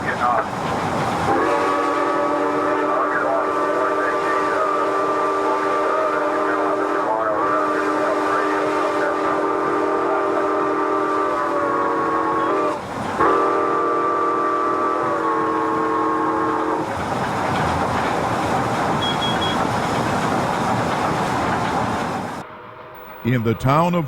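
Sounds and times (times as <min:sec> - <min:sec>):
steam locomotive running on rails: 0:00.0 - 0:24.0
steam whistle blasts: 0:01.3 - 0:16.8.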